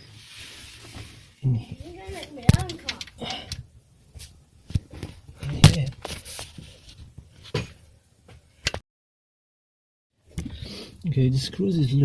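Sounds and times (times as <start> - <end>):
hand tools clicking on metal: 2.5 - 3.6.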